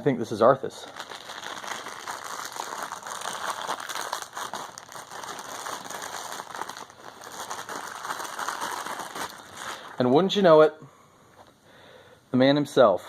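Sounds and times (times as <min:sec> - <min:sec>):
plastic wrapping crinkling: 0:00.8 - 0:10.4.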